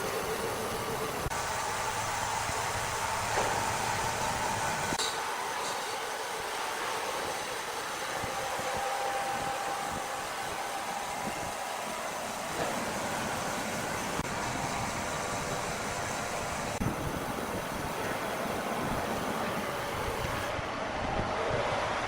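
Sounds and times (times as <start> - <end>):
machine running with faint whine: 0.0 - 22.0.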